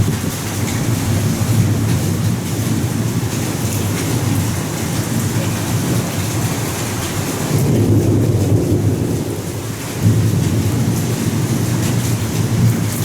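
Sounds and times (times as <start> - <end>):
low rolling thunder: 7.5 - 13.0.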